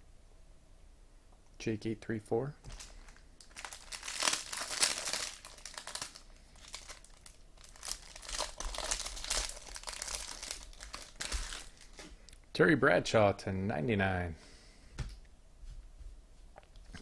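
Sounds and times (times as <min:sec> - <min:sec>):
card pack wrapper crinkling: 0:02.6 - 0:12.1.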